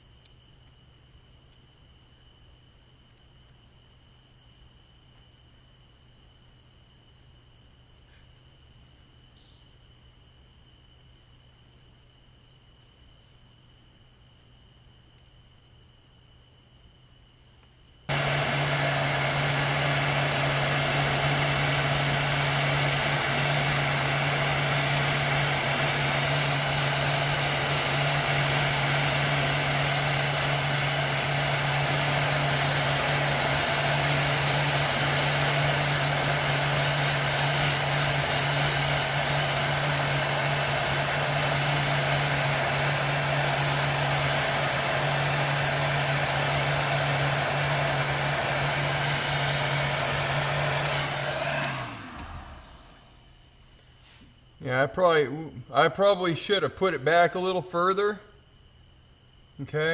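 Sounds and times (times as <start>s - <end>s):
hot-air blower running: 18.1s - 53.3s.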